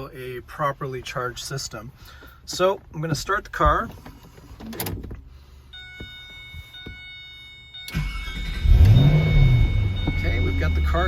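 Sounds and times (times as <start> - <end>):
high electronic chime: 5.8 - 11.0
ignition clicks: 7.8 - 11.0
car engine firing and revving: 8.0 - 11.0.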